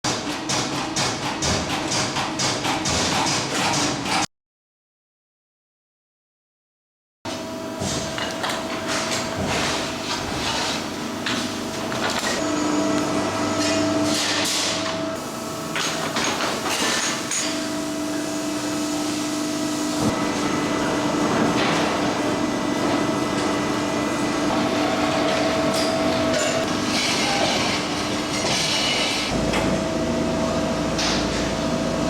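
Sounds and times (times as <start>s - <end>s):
machine hum: 7.4s - 28.4s.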